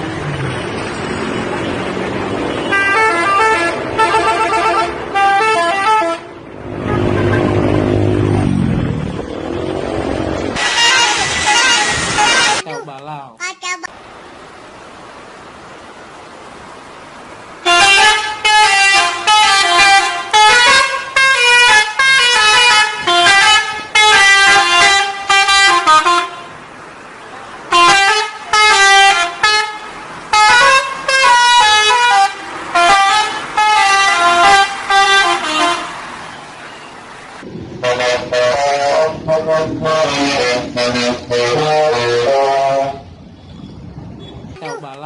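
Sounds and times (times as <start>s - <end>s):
bus musical horn jingle: 2.5s - 7.9s, 10.6s - 12.6s, 17.6s - 26.6s, 27.7s - 36.1s, 37.8s - 43.6s.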